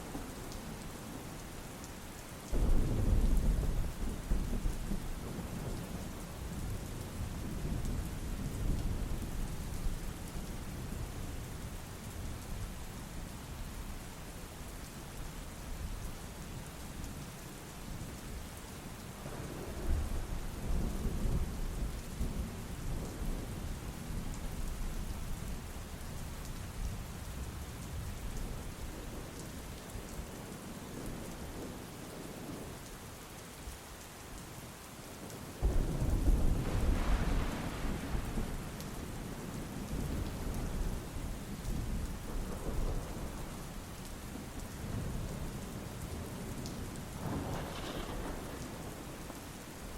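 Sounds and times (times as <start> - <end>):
steady rain: 0.0 - 49.9
thunder rumbling: 2.5 - 9.8, 35.6 - 49.9
thunder clap: 35.6 - 38.8, 47.2 - 49.1.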